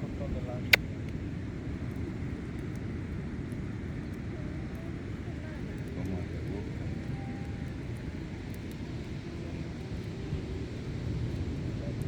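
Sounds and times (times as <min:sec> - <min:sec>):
faint distant voices: 0:03.8 - 0:12.0.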